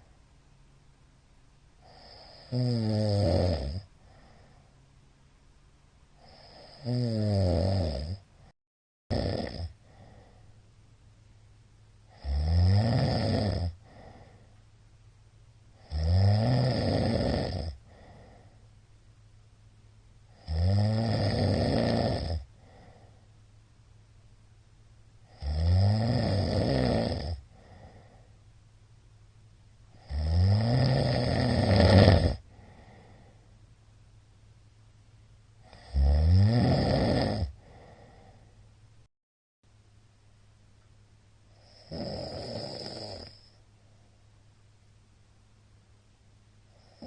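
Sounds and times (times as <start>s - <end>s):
quiet breathing: 1.7s - 2.8s, 3.6s - 5.3s, 6.1s - 7.0s, 9.4s - 10.9s, 13.2s - 16.0s, 16.9s - 20.5s, 21.4s - 23.7s, 26.3s - 30.2s, 31.0s - 33.9s, 37.3s - 39.1s, 41.4s - 44.5s, 46.6s - 47.0s
man snoring loudly: 1.8s - 3.9s, 6.2s - 8.2s, 9.1s - 10.2s, 12.1s - 14.1s, 15.8s - 18.1s, 20.3s - 22.8s, 25.3s - 28.0s, 30.0s - 33.0s, 35.6s - 37.9s, 41.6s - 43.5s.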